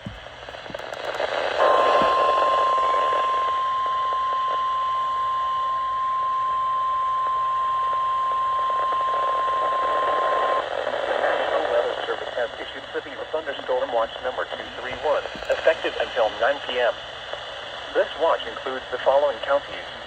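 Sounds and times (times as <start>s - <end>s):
radio static hiss: 0.0s - 4.6s, 10.0s - 20.0s.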